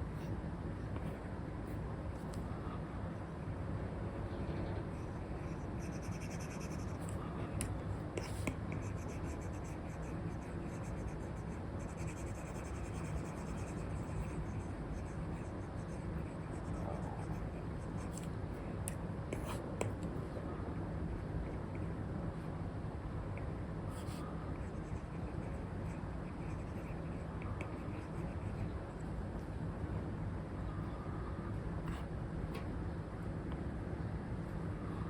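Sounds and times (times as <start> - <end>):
steady low rumble: 0.0 - 35.0
stylus scratching on screen: 4.5 - 20.1, 24.0 - 29.0.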